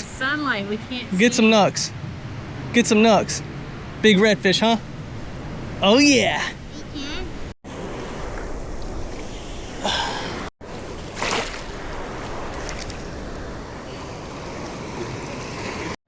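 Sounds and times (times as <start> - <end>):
surf washing on beach: 7.7 - 16.0.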